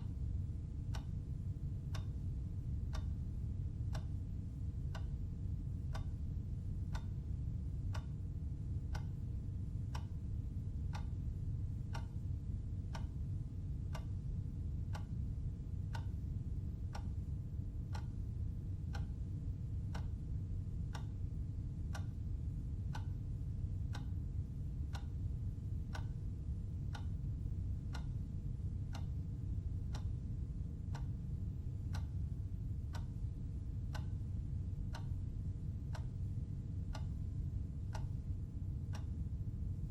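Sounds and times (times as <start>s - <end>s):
low background hum: 0.0s - 39.9s
clock ticking: 0.9s - 5.2s, 5.8s - 6.3s, 6.9s - 8.2s, 8.9s - 9.2s, 10.9s - 11.2s, 11.8s - 12.3s, 12.9s - 13.2s, 13.9s - 14.3s, 14.9s - 15.2s, 15.8s - 16.3s, 17.9s - 18.3s, 18.9s - 19.2s, 19.8s - 20.2s, 20.9s - 21.2s, 21.9s - 22.2s, 22.9s - 23.2s, 23.9s - 24.2s, 24.8s - 25.3s, 25.9s - 26.2s, 26.8s - 27.2s, 27.8s - 28.2s, 28.9s - 29.2s, 29.9s - 30.1s, 30.9s - 31.2s, 31.9s - 32.2s, 32.9s - 34.2s, 34.9s - 36.2s, 36.9s - 37.3s, 37.9s - 39.2s.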